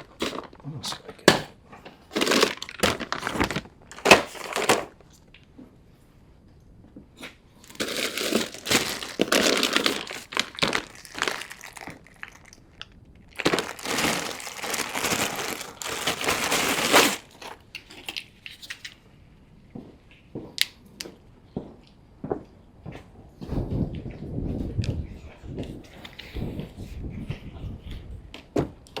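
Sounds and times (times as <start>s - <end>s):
plastic crinkling and rustling: 0.0s - 1.3s, 2.0s - 5.2s, 7.6s - 18.9s.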